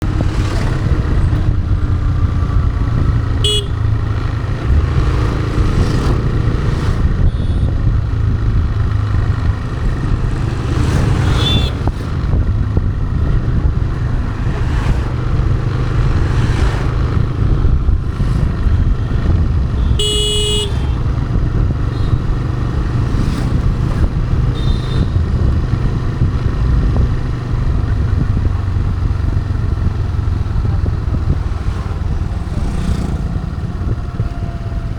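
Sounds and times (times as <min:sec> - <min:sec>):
motorcycle engine running: 0:00.0 - 0:34.9
vehicle horns honking: 0:03.2 - 0:04.1, 0:07.2 - 0:07.9, 0:11.2 - 0:11.9, 0:18.7 - 0:22.4, 0:24.5 - 0:25.3.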